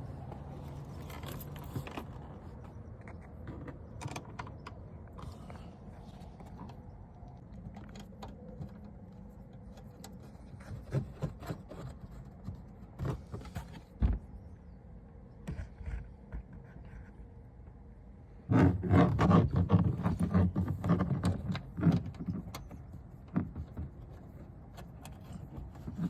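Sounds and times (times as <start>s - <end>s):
clicks and knocks handling parts: 0.2s - 14.3s, 18.5s - 26.0s.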